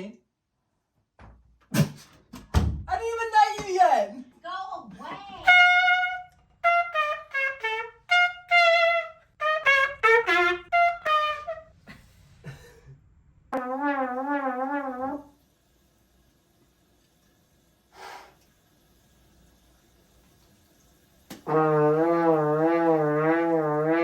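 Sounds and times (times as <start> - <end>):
brass fanfare: 5.3 - 11.9, 13.6 - 15.4, 21.4 - 24.0.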